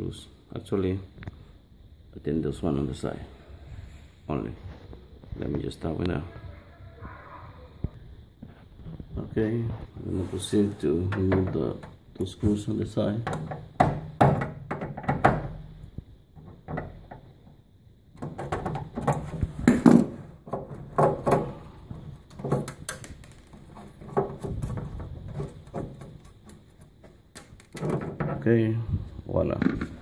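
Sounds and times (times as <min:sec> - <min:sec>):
tool knocking and scraping plastic: 0:11.0 - 0:12.0, 0:13.2 - 0:15.7, 0:16.3 - 0:28.5.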